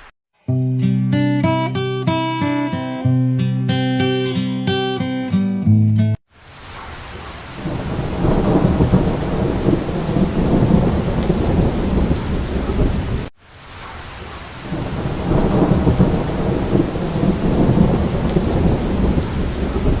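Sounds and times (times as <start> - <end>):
steady rain: 6.3 - 20.0
rolling thunder: 7.5 - 13.3, 14.6 - 20.0.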